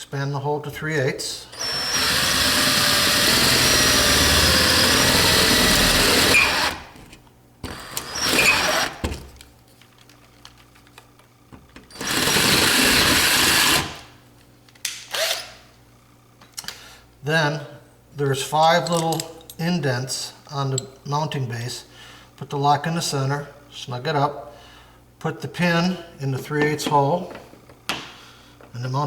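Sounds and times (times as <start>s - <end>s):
power drill drilling: 1.6s - 6.9s, 7.6s - 9.1s, 11.9s - 14.1s, 15.1s - 15.6s.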